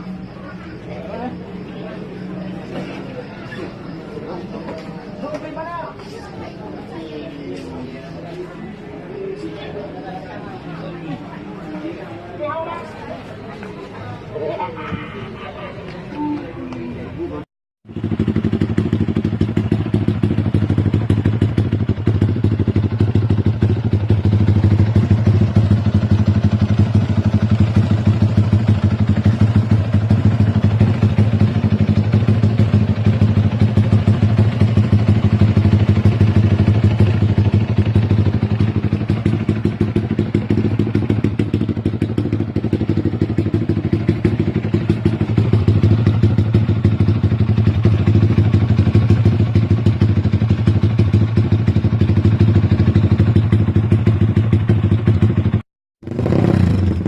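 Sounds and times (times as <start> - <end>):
motorcycle engine idling: 16.6 - 57.0.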